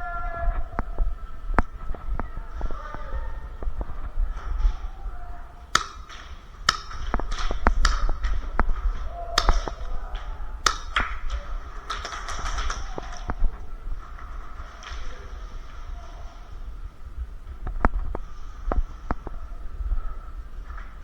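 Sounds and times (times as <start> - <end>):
airsoft gunshots and bb hits: 5.8 - 8.7, 9.4 - 9.9, 10.6 - 12.2.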